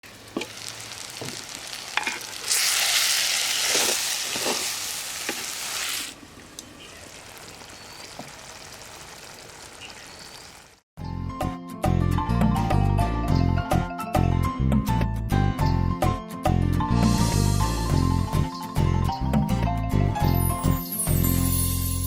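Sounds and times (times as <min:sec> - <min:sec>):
food frying in a pan: 0:00.0 - 0:10.8
spoon stirring and scraping pan: 0:03.5 - 0:05.8.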